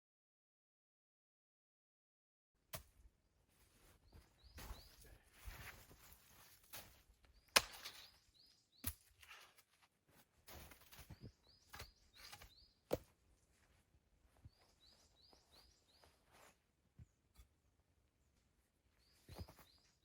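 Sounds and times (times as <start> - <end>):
small bird chirping: 4.0 - 5.2, 7.3 - 9.2, 11.0 - 12.9, 14.5 - 17.2.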